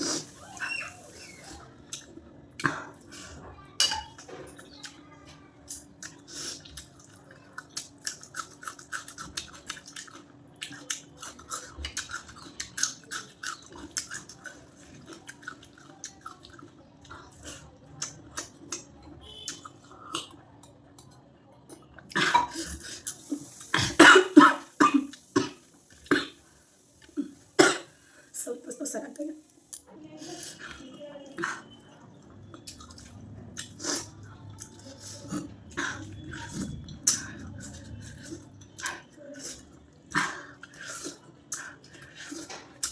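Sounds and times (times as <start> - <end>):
person chewing with mouth clicks: 5.7 - 21.1, 32.5 - 42.9
person coughing: 23.8 - 26.3.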